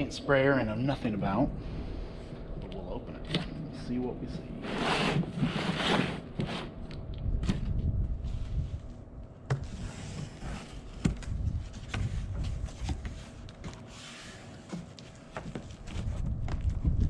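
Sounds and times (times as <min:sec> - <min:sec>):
wind rumble on microphone: 0:06.8 - 0:13.4, 0:15.8 - 0:17.0.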